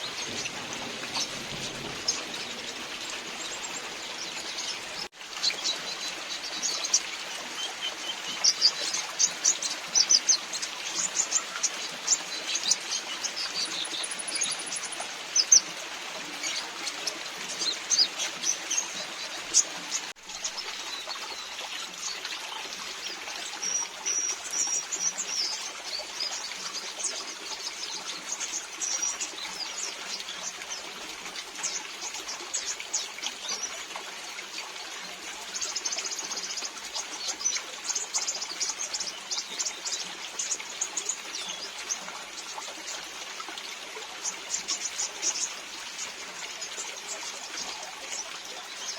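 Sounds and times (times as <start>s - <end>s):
falling rain: 0.0s - 7.2s
birds chirping: 0.0s - 21.5s
trickling water: 0.0s - 48.9s.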